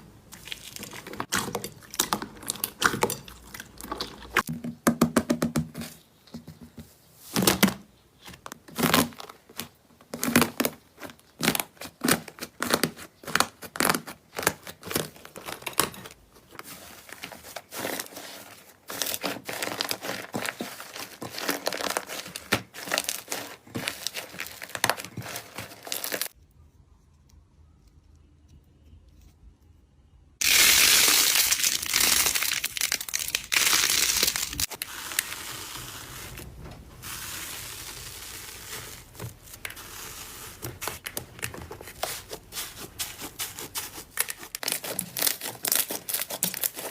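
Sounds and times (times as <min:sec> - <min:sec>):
slime crackling and popping: 0:19.0 - 0:26.4, 0:30.4 - 0:36.4, 0:43.6 - 0:46.9.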